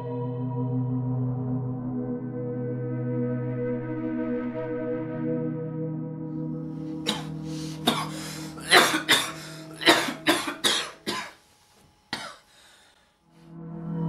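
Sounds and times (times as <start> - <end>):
ambient music drone: 0.0 - 11.3, 13.2 - 14.0
person coughing harshly: 7.0 - 11.4, 12.1 - 12.5.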